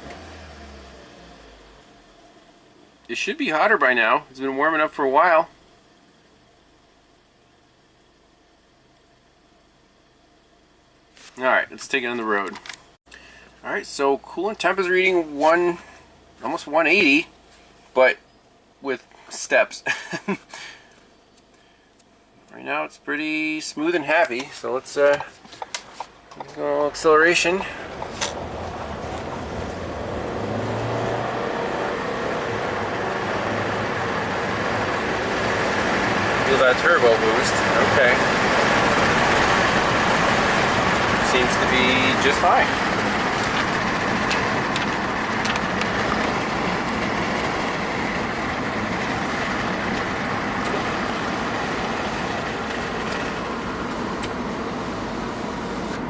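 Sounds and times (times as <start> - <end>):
road and tyre noise: 0.0 - 3.2, 23.8 - 56.0
van engine accelerating: 0.0 - 5.4, 26.2 - 56.0.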